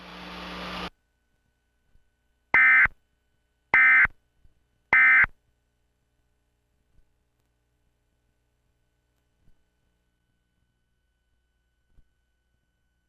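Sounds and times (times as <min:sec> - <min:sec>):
background noise: 0:00.9 - 0:13.0
two-tone digital data bursts: 0:02.6 - 0:02.9, 0:03.8 - 0:04.1, 0:05.0 - 0:05.3.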